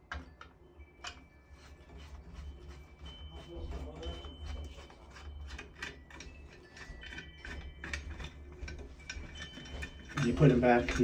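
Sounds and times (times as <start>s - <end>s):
screwdriver clicking and ticking: 5.2s - 10.3s.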